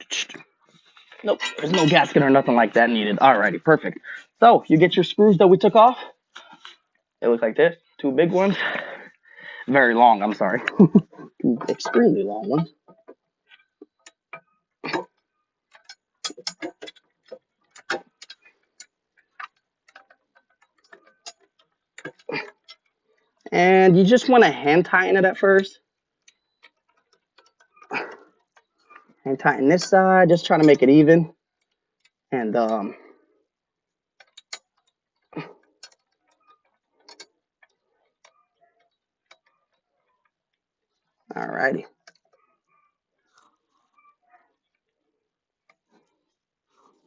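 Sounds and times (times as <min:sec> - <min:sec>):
small metallic clicks and taps: 0:11.6 - 0:24.2, 0:25.4 - 0:45.0.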